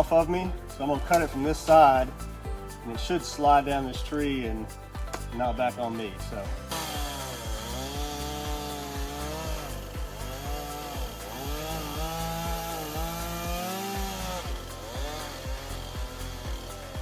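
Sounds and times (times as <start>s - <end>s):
chainsaw cutting wood: 0.0s - 2.4s, 6.4s - 17.0s
background music with beat: 0.0s - 17.0s.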